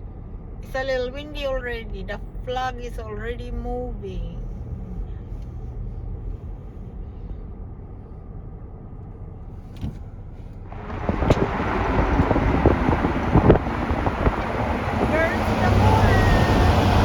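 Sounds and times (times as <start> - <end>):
car rumble: 0.0 - 17.0
wind buffeting microphone: 10.7 - 17.0.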